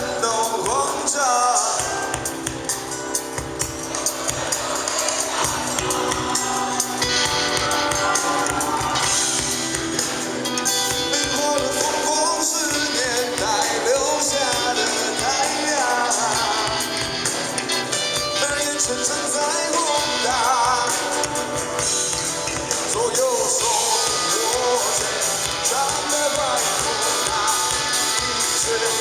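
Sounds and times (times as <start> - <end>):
rock band playing live: 0.0 - 29.0.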